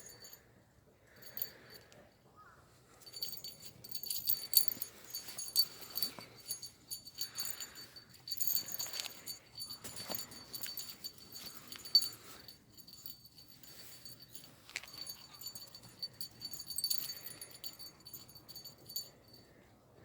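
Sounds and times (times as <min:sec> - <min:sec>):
light metallic jingling: 0:00.0 - 0:19.9.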